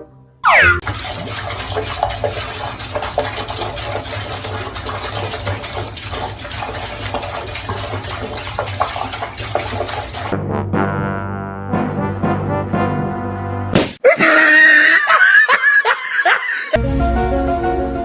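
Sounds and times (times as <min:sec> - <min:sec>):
cartoon boing: 0:00.4 - 0:00.8
running water rushing: 0:00.8 - 0:10.3.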